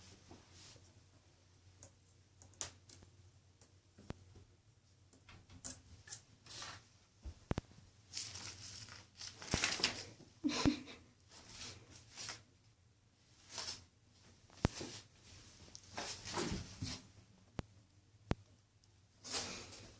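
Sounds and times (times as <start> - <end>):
lint roller sheet crinkling: 6.0 - 6.9, 8.1 - 10.2, 11.3 - 12.5, 13.4 - 13.9.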